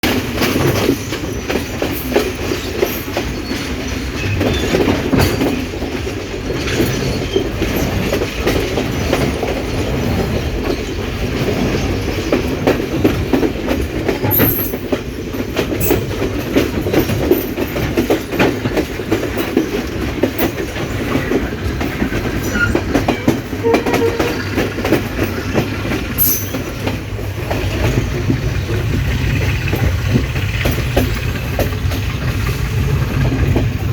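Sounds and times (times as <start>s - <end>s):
train rumbling on track: 0.0s - 33.9s
wheels clicking over rail joints: 0.0s - 33.9s
high wheel squeaks: 20.8s - 31.5s.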